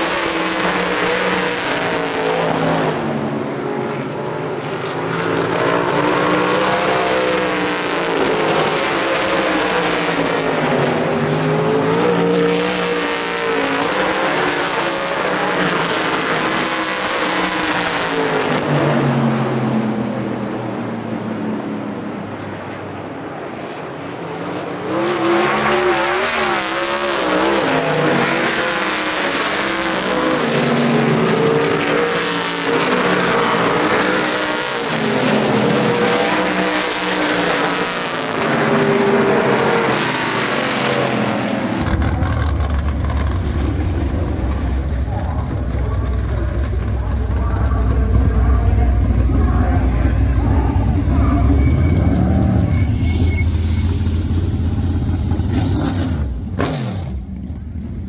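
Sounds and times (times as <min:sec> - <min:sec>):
race car engines passing: 0:00.0 - 0:58.0
steady low rumble: 0:42.0 - 0:55.6.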